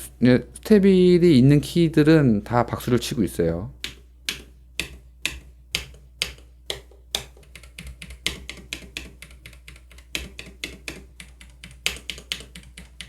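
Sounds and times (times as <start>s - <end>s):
mechanical keyboard typing: 3.8s - 13.0s.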